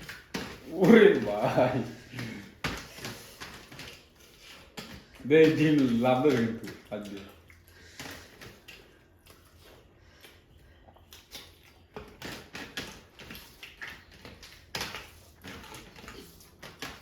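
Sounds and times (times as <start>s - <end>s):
person chewing food: 0.0s - 5.7s, 6.7s - 17.0s.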